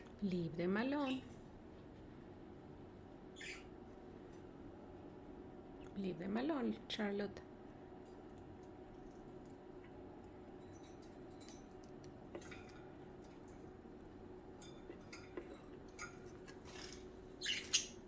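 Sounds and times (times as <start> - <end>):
steady low hum: 0.0 - 18.0
budgies chirping: 3.4 - 3.8, 16.2 - 18.0.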